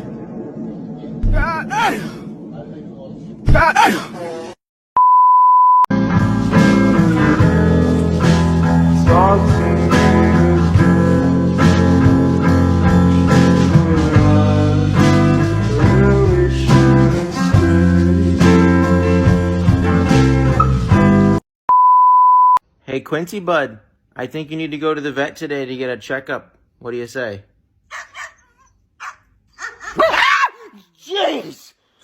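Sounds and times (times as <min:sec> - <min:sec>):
steady beep: 0:05.0 - 0:05.9, 0:21.7 - 0:22.6
blues guitar and singing: 0:06.2 - 0:20.4.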